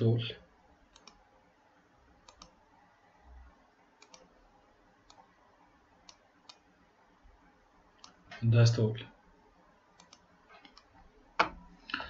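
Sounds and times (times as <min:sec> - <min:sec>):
faint sharp clicks: 0:00.9 - 0:01.2, 0:02.2 - 0:02.6.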